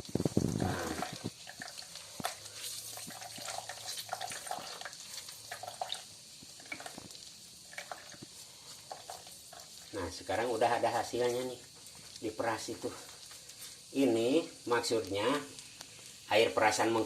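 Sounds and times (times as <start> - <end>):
juice dripping from wrung cloth: 0.0 - 10.0.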